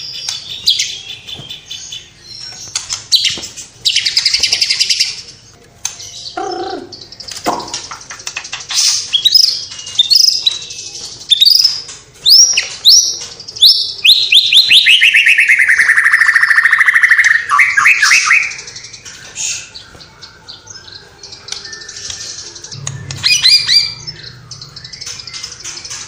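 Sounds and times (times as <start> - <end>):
bird singing whistled notes: 12.3 - 26.0.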